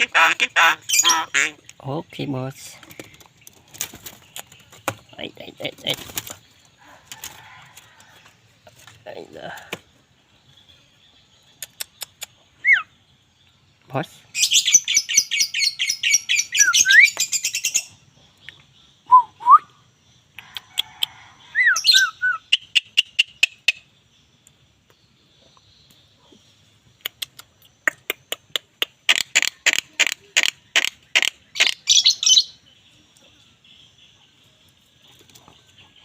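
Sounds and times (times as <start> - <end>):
bird harsh rasping calls: 0.0 - 1.9, 14.3 - 18.0, 27.6 - 32.6.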